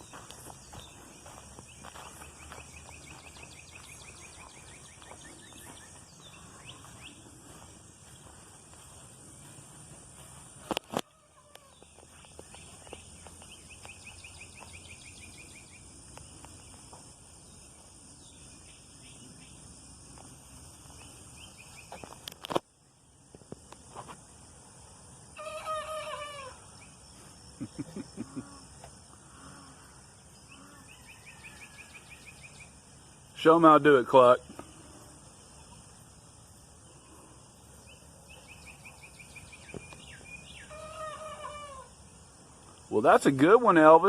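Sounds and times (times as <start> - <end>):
insects trilling: 0.0 - 44.0
young rooster crowing: 10.9 - 11.8, 25.4 - 26.7, 30.8 - 32.2, 40.7 - 41.9.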